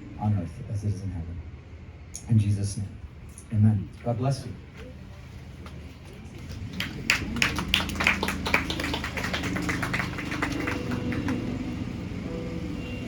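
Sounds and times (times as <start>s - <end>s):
people clapping: 5.6s - 12.1s
sustained music notes: 8.0s - 13.0s.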